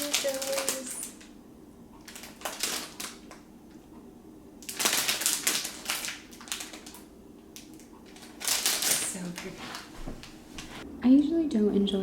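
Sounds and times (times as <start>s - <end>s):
crinkly wrapping rustling: 0.0s - 1.2s, 2.0s - 3.4s, 4.6s - 10.8s.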